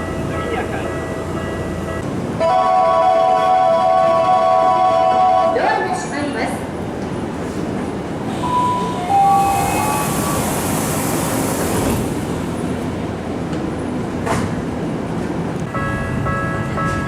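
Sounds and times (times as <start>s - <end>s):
electric train running with hiss: 8.4s - 12.6s.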